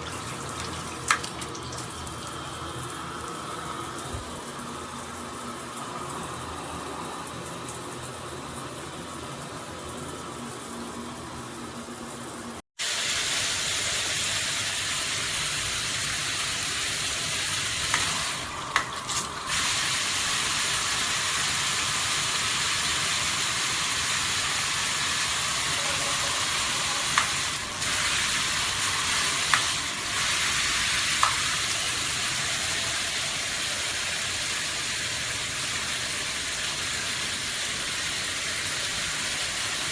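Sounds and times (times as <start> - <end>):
shower spray hissing: 12.8 - 39.9.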